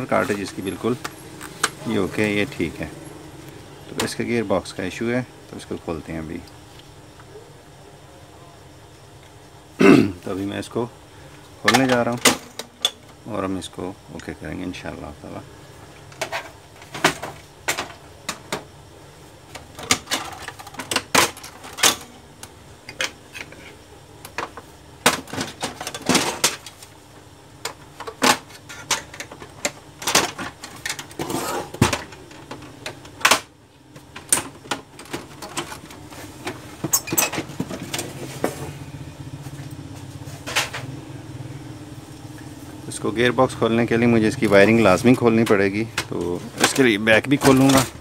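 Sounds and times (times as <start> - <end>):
plastic printer parts rattling: 19.6 - 22.2, 28.0 - 33.5, 34.1 - 38.5, 44.8 - 48.0.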